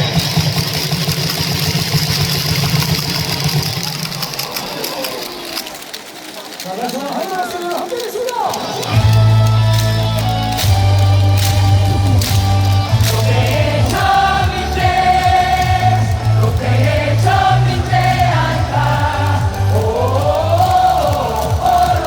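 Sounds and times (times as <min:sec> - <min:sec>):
loud amplified music with heavy bass: 0:09.0 - 0:22.0
stadium crowd singing in unison: 0:12.9 - 0:22.0.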